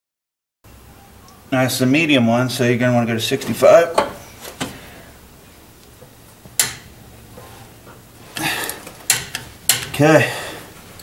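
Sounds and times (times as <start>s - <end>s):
wrench clicking: 9.1s - 10.0s.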